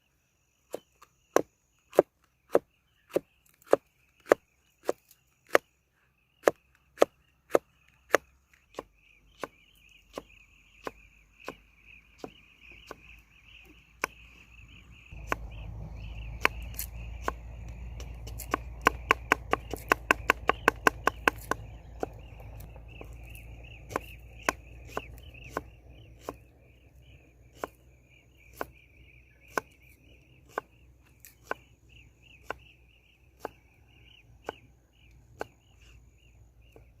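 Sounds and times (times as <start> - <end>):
insects chirring: 0.0 - 37.0
low steady rumble: 14.5 - 29.2
knife chopping on cutting board: 18.0 - 22.2.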